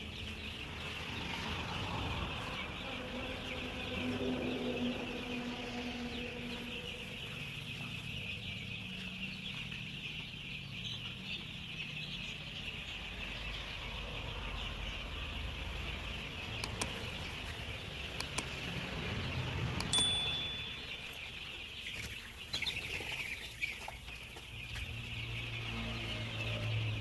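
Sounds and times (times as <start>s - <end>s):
chicks peeping: 0.0s - 27.0s
sharp clicks: 16.6s - 17.3s, 18.1s - 18.7s, 19.8s - 20.5s.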